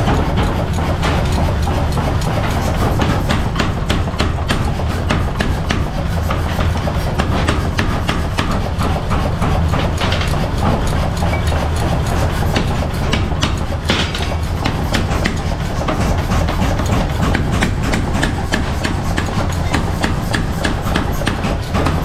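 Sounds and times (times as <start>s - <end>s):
irregular clicks and knocks: 0.0s - 22.0s.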